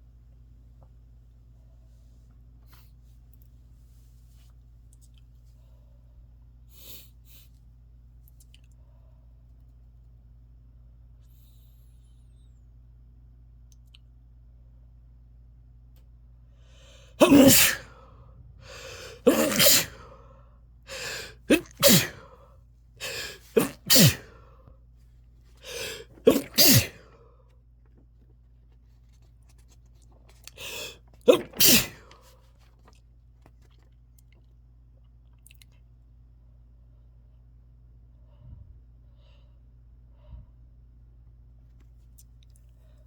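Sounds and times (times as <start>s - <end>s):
person sneezing: 17.2s - 18.1s, 18.7s - 20.2s, 20.9s - 22.4s, 23.0s - 24.4s, 25.6s - 27.2s, 30.4s - 32.3s.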